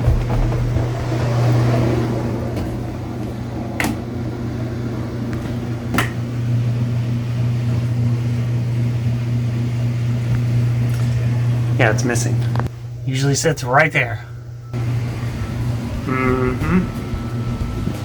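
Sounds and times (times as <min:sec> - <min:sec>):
low electrical hum: 0:00.0 - 0:18.0.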